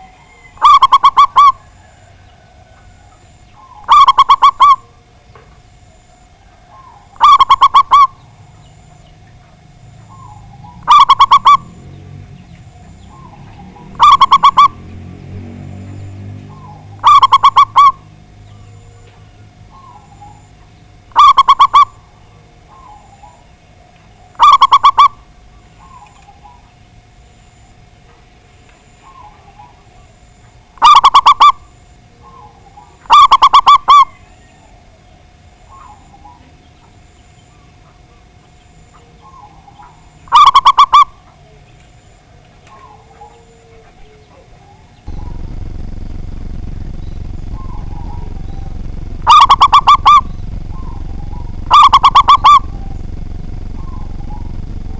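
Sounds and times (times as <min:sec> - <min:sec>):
dove cooing: 0:00.0 - 0:05.0, 0:06.4 - 0:08.6, 0:10.1 - 0:12.0, 0:12.8 - 0:15.0, 0:16.5 - 0:18.1, 0:42.7 - 0:54.9.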